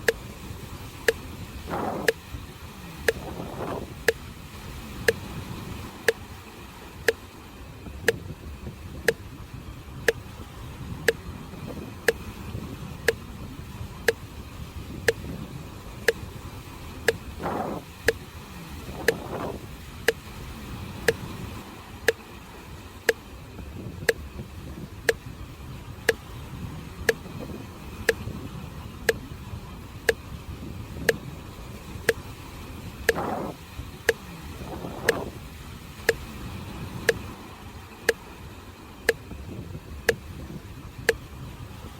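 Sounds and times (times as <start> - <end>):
surf whooshes: 0.0 - 9.0
sea waves rushing: 0.0 - 14.8, 15.5 - 40.9
sharp regular ticks: 1.0 - 4.3, 8.0 - 9.3, 15.0 - 15.3, 17.0 - 18.2, 18.8 - 20.2, 21.0 - 21.3, 24.0 - 25.3, 27.0 - 28.3, 31.0 - 31.3, 33.0 - 36.4, 37.1 - 37.3, 40.1 - 41.3.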